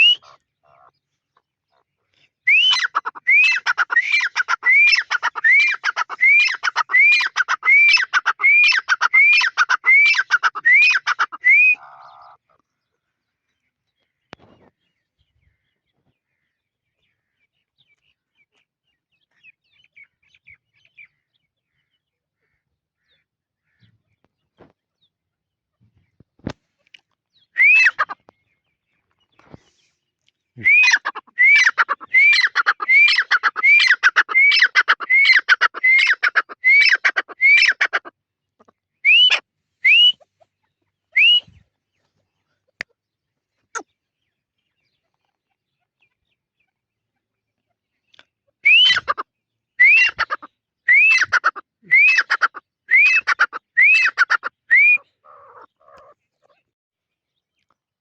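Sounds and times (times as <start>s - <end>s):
francolin whistled calls: 0.0s - 0.3s, 2.5s - 11.9s, 27.5s - 28.0s, 30.6s - 37.9s, 39.0s - 40.3s, 41.1s - 41.6s, 48.6s - 49.1s, 49.8s - 50.3s, 50.9s - 55.2s.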